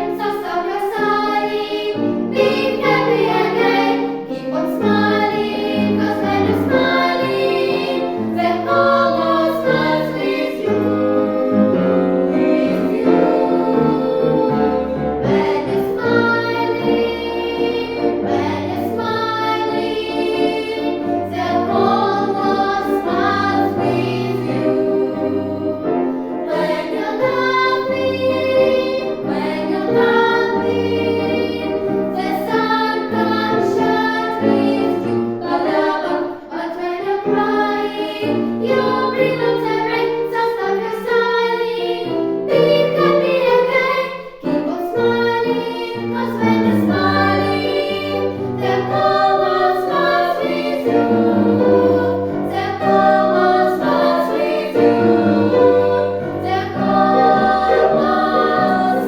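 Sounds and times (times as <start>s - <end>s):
vocal ensemble singing in harmony: 0.0s - 59.0s.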